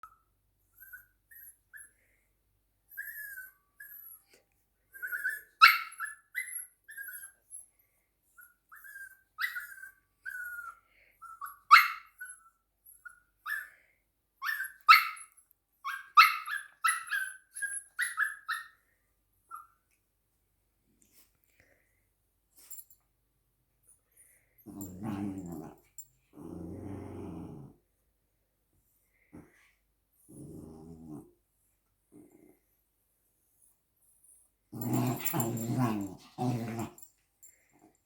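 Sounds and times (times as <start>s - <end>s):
dog whining and whimpering: 2.9s - 4.3s, 4.9s - 7.7s, 8.4s - 13.7s, 34.8s - 37.1s.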